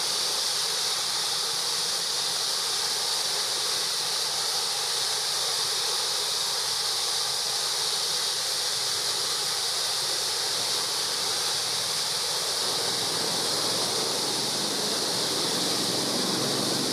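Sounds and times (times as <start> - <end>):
waterfall rushing: 8.3 - 16.9.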